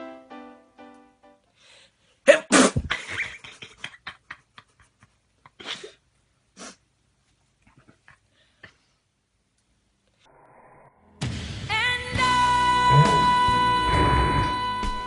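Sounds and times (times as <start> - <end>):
man sneezing: 2.2 - 2.9.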